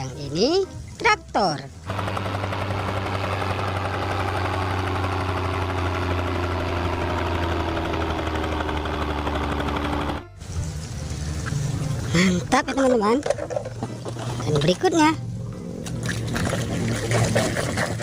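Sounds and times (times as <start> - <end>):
tractor engine idling: 1.9 - 10.3.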